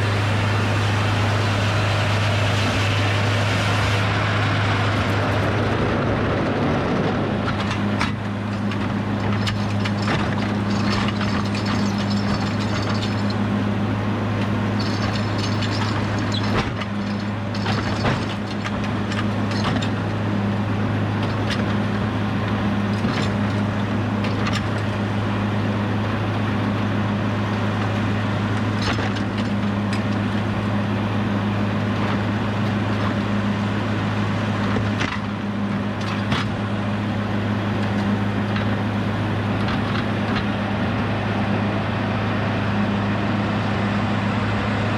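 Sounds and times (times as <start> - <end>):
engine running: 0.0 - 44.9
knocks and clatter: 7.4 - 13.4, 14.4 - 20.0, 34.6 - 36.6, 39.6 - 40.6.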